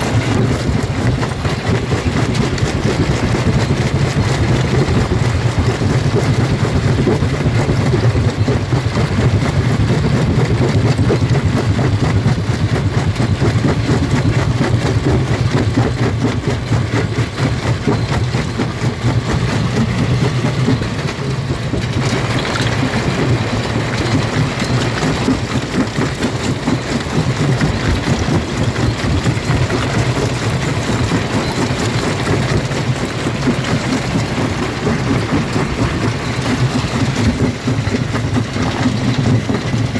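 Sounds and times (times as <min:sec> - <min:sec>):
rock crusher drive drone: 0:00.0 - 0:39.9
stone crunching and rattling: 0:17.0 - 0:39.9.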